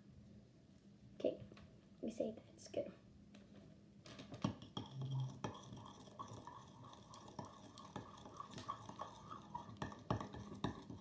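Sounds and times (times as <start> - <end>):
utensil stirring slime in bowl: 4.2 - 11.0.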